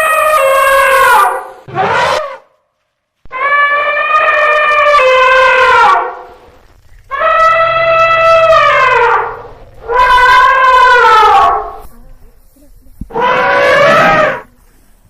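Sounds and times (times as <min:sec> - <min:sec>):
elephant trumpeting: 0:00.0 - 0:02.5, 0:03.3 - 0:06.5, 0:07.1 - 0:11.9, 0:13.1 - 0:14.5.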